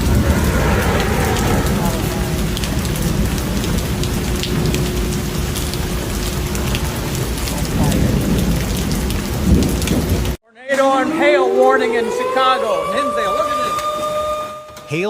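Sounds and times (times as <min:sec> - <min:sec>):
raindrops ticking on hard surfaces: 0:00.0 - 0:10.4
heavy rain pouring: 0:00.0 - 0:15.0
storm rumble: 0:00.0 - 0:15.0.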